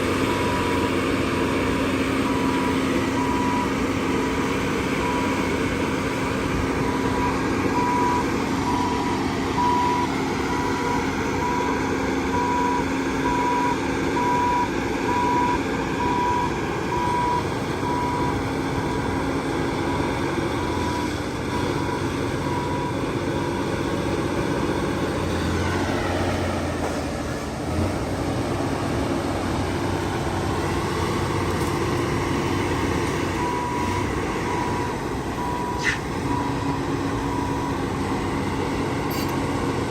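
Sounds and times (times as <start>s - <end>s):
heavy machinery running: 0.0s - 39.9s
reversing alarm beeping: 2.2s - 19.2s, 19.8s - 23.6s, 33.3s - 39.6s.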